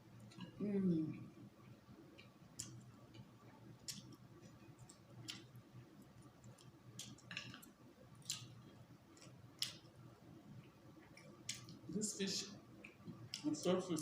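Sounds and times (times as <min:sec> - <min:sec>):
mouth clicks of eating: 0:02.2 - 0:05.5, 0:06.5 - 0:08.5, 0:09.2 - 0:09.8, 0:11.1 - 0:11.8.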